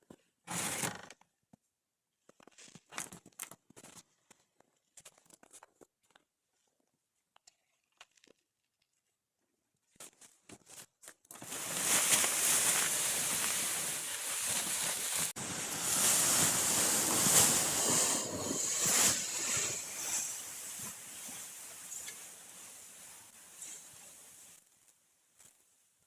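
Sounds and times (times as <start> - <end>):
wind blowing in gusts: 11.6 - 22.0.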